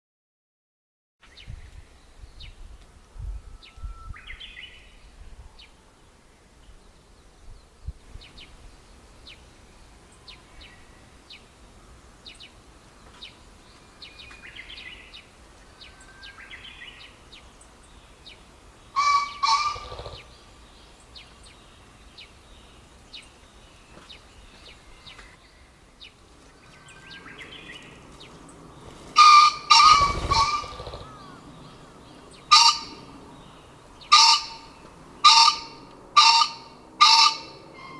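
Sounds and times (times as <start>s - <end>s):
small birds chirping: 1.2s - 37.9s
pheasant crowing: 18.9s - 20.3s, 29.1s - 37.9s.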